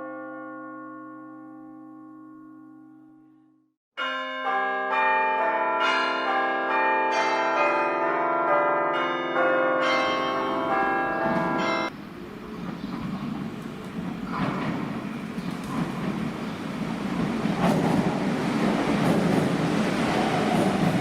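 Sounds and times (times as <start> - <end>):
church bells ringing: 0.0 - 3.0, 4.0 - 12.0.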